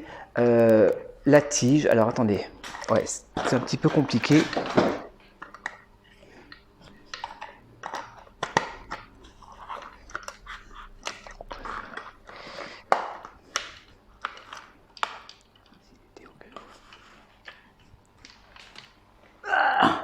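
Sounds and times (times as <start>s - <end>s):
plastic parts clicking and scraping: 2.6s - 5.8s, 6.4s - 19.0s.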